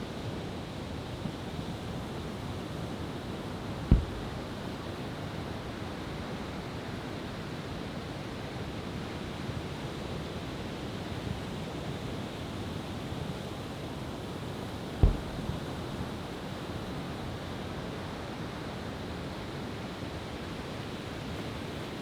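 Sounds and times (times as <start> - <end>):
outdoor noise: 3.8 - 5.2, 15.0 - 17.3
firework boom: 3.9 - 4.8, 15.0 - 16.2.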